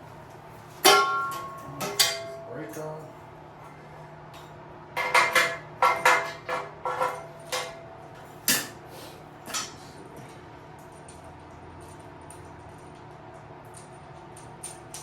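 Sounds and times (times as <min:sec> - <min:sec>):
steady low hum: 0:00.0 - 0:15.0
metal tools clanking: 0:00.8 - 0:03.1.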